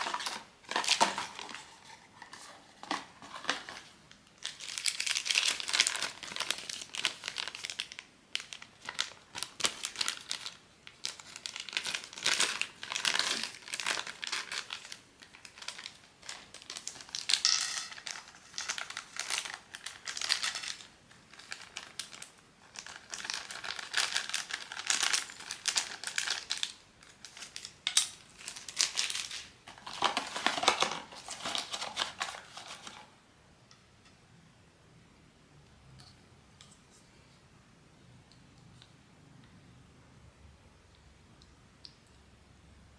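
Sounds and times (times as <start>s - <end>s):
packaging wrapper crinkling: 0.0s - 33.1s.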